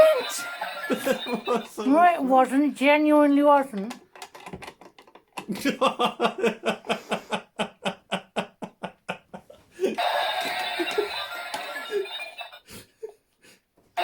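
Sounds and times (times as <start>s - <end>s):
person laughing: 0.0s - 1.8s, 5.5s - 13.2s.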